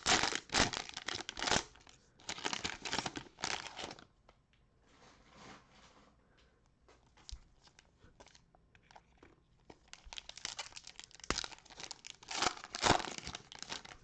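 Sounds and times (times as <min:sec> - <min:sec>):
cellophane wrapper crinkling: 0:00.0 - 0:04.1, 0:07.2 - 0:14.0.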